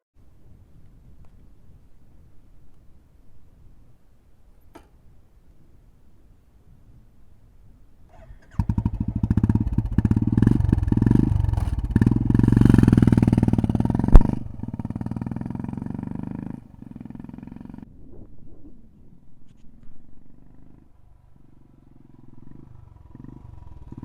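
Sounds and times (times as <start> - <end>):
motorcycle engine exhaust pulses: 8.1 - 17.9, 19.8 - 24.0
sharp exhaust crack: 8.2 - 17.1.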